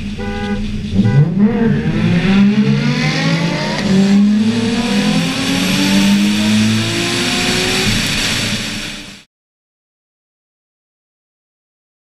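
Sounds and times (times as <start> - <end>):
sports car engine accelerating: 0.0 - 9.2.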